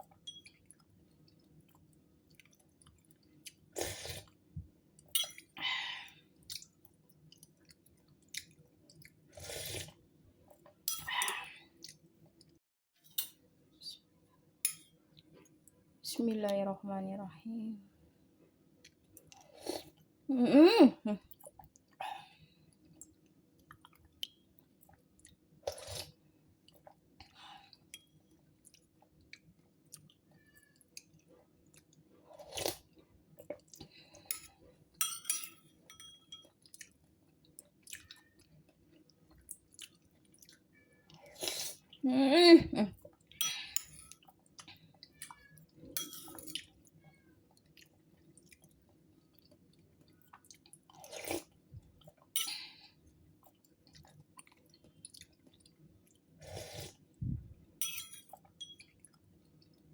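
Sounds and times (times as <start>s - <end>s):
person chewing: 36.6s - 42.0s, 43.1s - 52.6s, 53.4s - 57.5s.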